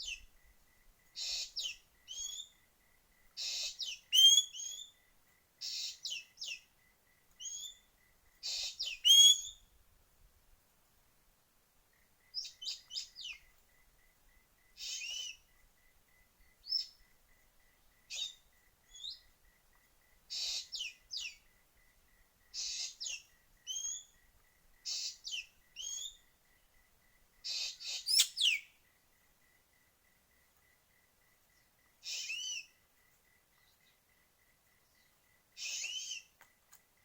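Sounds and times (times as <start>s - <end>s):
bird calls: 27.5s - 28.8s, 32.0s - 32.8s, 35.0s - 36.4s.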